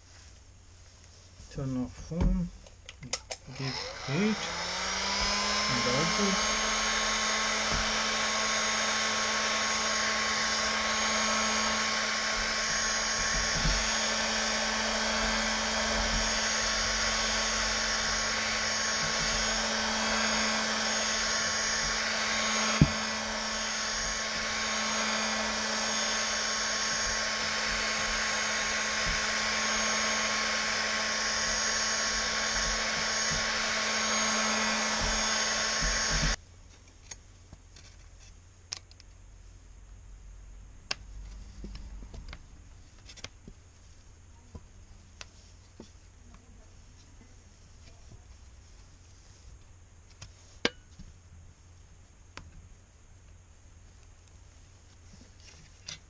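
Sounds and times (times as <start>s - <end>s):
hot-air gun blowing: 3.6s - 36.4s.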